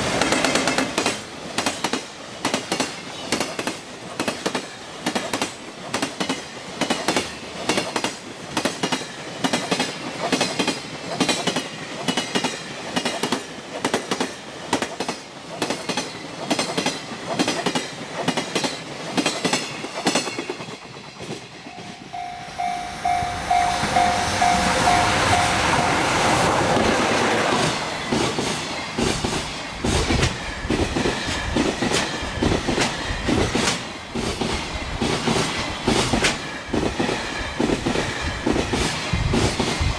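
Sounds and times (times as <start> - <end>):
train wheels clattering over rail joints: 0.0 - 21.7, 22.6 - 39.9
pulsing tone: 21.7 - 26.6.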